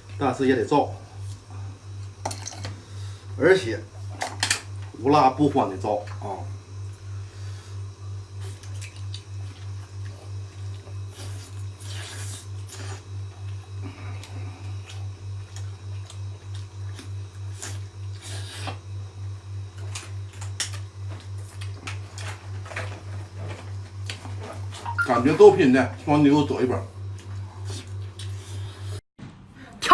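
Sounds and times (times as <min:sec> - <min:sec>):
pulsing low hum: 0:00.0 - 0:29.8
close chewing noises: 0:08.3 - 0:18.9, 0:19.6 - 0:29.0.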